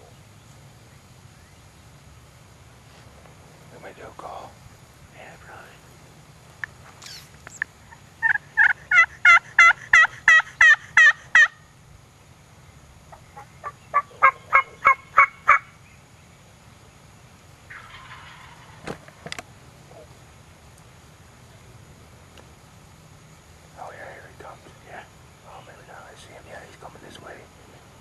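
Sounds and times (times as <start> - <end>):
faint rustle: 0.0 - 8.1
turkey call hen yelps: 7.9 - 11.6, 13.1 - 15.7, 17.7 - 18.8.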